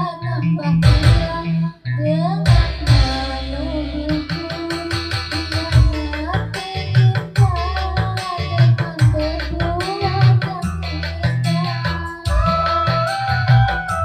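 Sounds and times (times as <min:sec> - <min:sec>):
heavy bass: 0:00.0 - 0:14.0
person singing melody: 0:00.0 - 0:14.0
drum beat: 0:00.8 - 0:01.3, 0:02.5 - 0:03.3, 0:04.1 - 0:10.6, 0:11.4 - 0:14.0.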